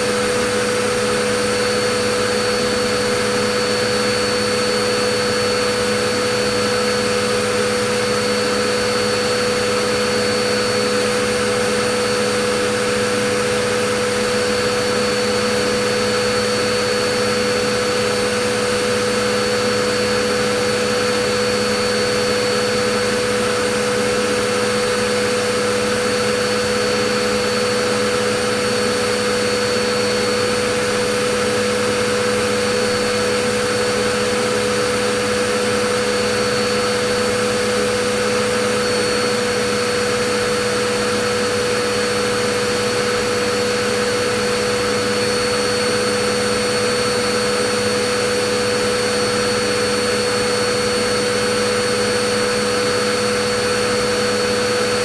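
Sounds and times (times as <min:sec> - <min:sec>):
vacuum cleaner running: 0:00.0 - 0:55.0.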